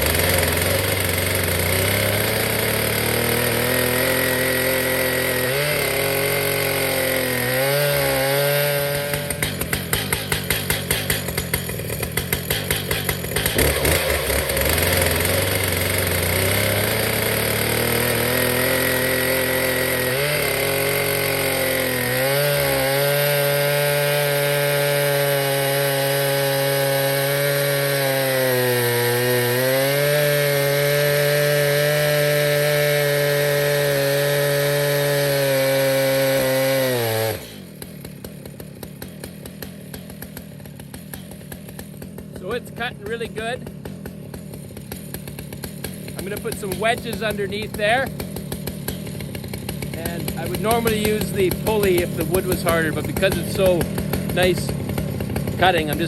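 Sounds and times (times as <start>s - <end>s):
chainsaw cutting through log: 0.0s - 56.0s.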